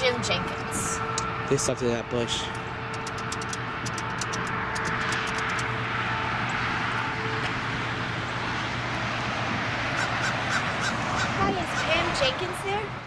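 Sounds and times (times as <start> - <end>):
cars passing: 0.0 - 13.0.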